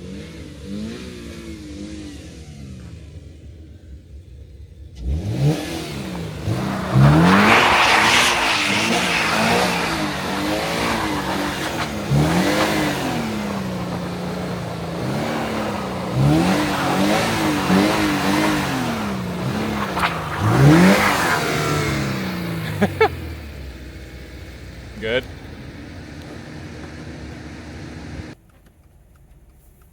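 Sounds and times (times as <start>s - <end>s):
car engine revving: 0.0s - 28.4s
burst of hiss: 6.1s - 13.3s.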